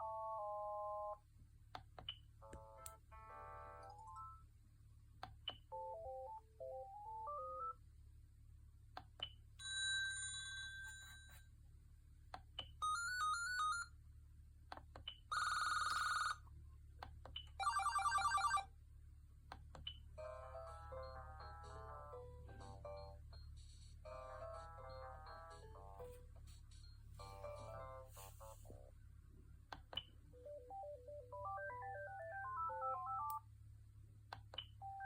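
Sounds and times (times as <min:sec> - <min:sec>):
phone ringtones: 0:15.3 - 0:16.4, 0:17.6 - 0:18.6.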